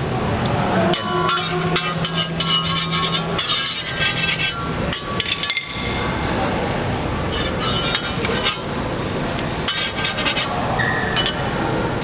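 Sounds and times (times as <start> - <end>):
metal spatula scraping griddle: 1.0 - 5.4, 7.3 - 8.8, 9.7 - 11.4.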